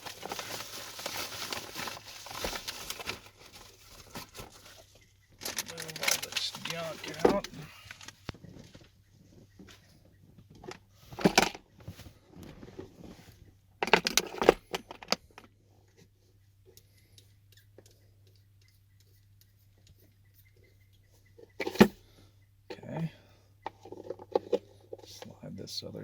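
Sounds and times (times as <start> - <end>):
small hard objects clattering: 0.0 - 8.2.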